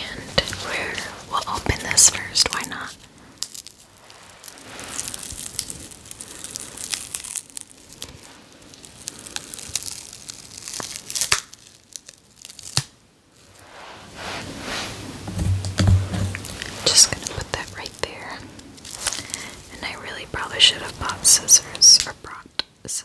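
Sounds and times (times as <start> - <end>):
plastic wrapping crinkling: 0.2 - 22.4
plastic wrapping snaps: 0.4 - 13.6, 15.3 - 19.7.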